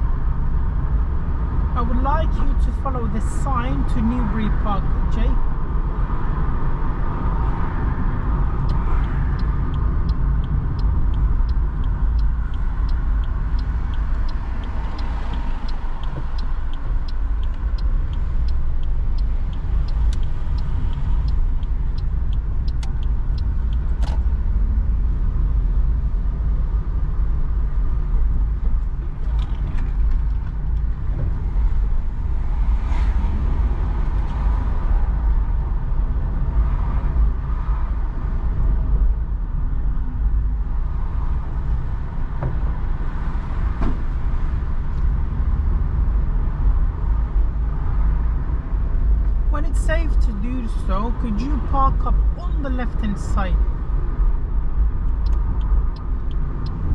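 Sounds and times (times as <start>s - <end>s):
car road and engine noise: 0.0s - 56.9s
turn indicator ticking: 1.6s - 7.4s, 8.2s - 25.2s, 42.5s - 56.9s.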